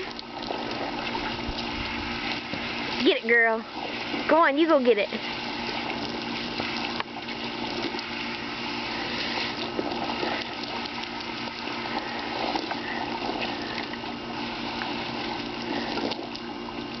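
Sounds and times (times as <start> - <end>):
garden hose spraying water: 0.0 - 17.0
water splashing: 0.0 - 17.0.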